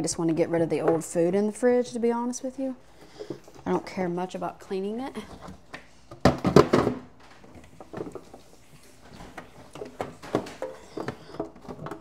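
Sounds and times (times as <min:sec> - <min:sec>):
items clicking and knocking: 0:02.9 - 0:04.0, 0:05.2 - 0:12.0.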